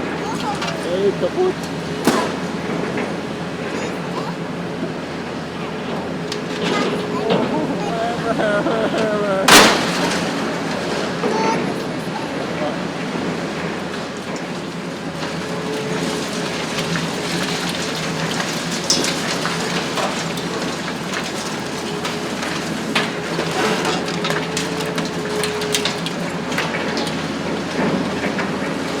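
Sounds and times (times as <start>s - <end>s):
low machine hum: 0.0s - 29.0s
concrete debris cracking and falling: 6.0s - 11.8s, 15.1s - 29.0s.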